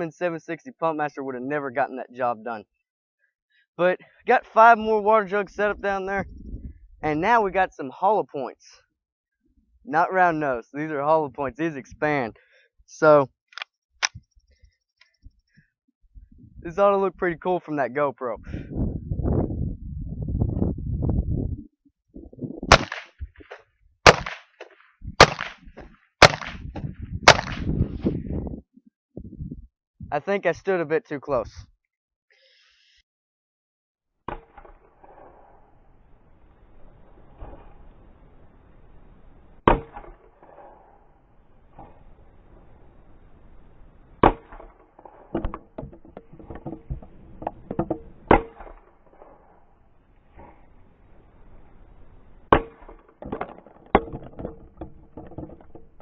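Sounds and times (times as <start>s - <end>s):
rifle shots with echo: 22.7s - 23.1s, 24.1s - 24.5s, 25.2s - 26.6s, 27.3s - 27.7s.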